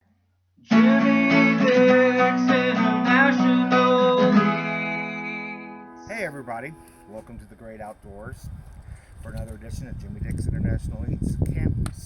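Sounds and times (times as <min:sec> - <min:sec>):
strummed acoustic guitar music: 0:00.7 - 0:07.4.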